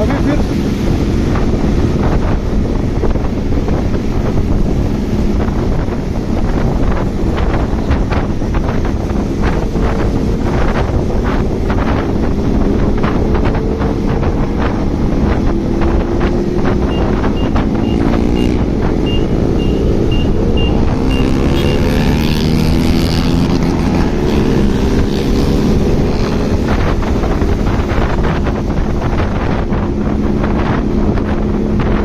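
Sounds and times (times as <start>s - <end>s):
motorcycle engines revving: 0.0s - 32.0s
wind buffeting microphone: 0.0s - 32.0s
short high beeps: 16.9s - 21.5s.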